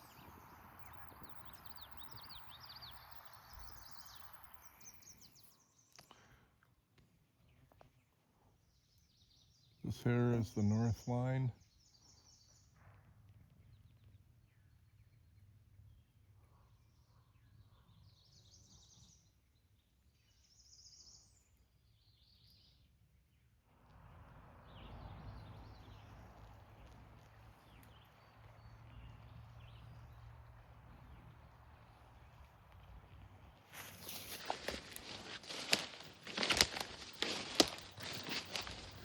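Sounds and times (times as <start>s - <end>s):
rustling with low rumble: 23.8s - 39.0s.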